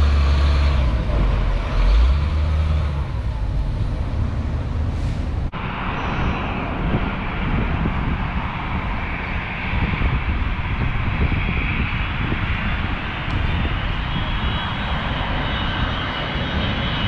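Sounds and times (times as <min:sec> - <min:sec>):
road traffic noise: 0:00.0 - 0:11.6
jet engine whine: 0:00.0 - 0:17.0
wind rumbling on microphone: 0:00.0 - 0:17.0.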